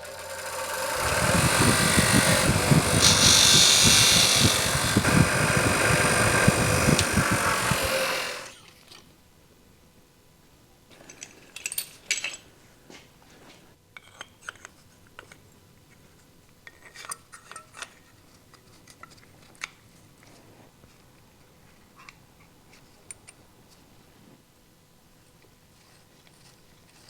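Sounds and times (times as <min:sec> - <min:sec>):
loud steady whirring: 0:00.0 - 0:08.6
metal parts clicking and tapping: 0:11.1 - 0:12.4.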